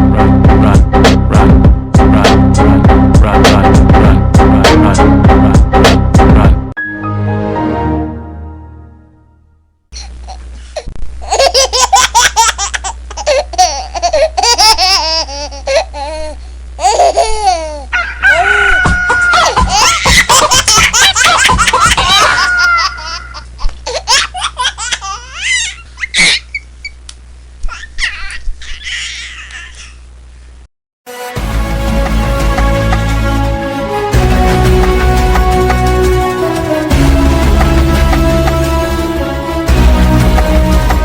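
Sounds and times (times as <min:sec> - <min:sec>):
hearty laughing: 0:18.3 - 0:23.4.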